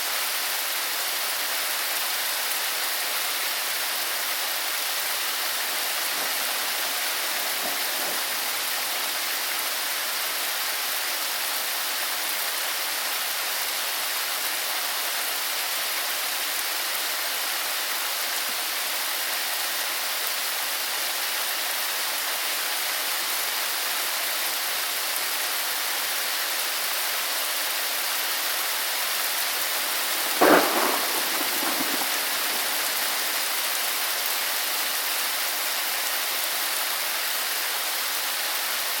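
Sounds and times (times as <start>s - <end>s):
heavy rain hissing: 0.0s - 39.0s
thunder crack: 5.4s - 9.5s, 29.6s - 34.1s.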